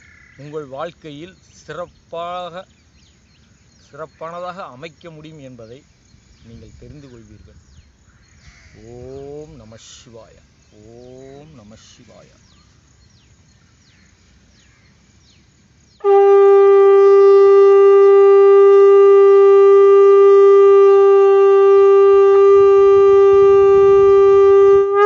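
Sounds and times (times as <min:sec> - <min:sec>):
faint chirps: 0:00.0 - 0:16.1
conch shell blown: 0:16.0 - 0:25.0.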